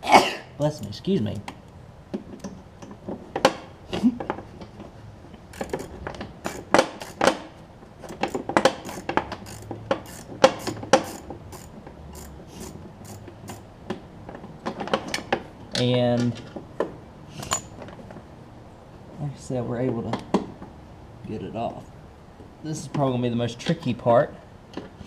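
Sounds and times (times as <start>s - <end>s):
socket wrench clicking: 5.5s - 7.4s, 8.0s - 13.6s, 17.4s - 17.7s.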